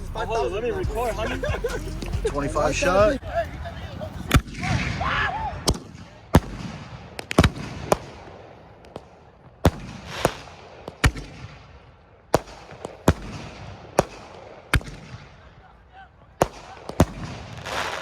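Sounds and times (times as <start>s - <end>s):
firework bangs: 3.6s - 15.6s, 16.3s - 18.0s
firework hiss: 17.4s - 18.0s.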